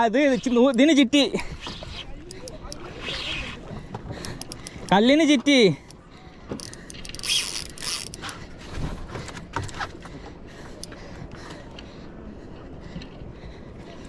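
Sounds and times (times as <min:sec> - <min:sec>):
fishing reel gears clicking: 0:02.2 - 0:03.2, 0:06.6 - 0:08.3.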